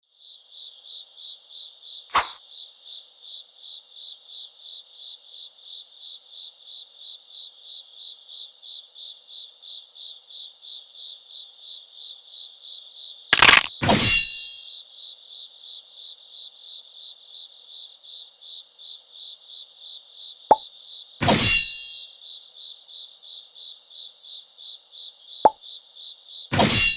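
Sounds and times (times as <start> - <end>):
crickets chirping: 0.1 - 13.8, 14.7 - 21.2, 22.1 - 26.5
loud sharp cracks: 2.1 - 2.4, 13.4 - 14.0
sharp click: 2.1 - 2.4, 13.4 - 14.0.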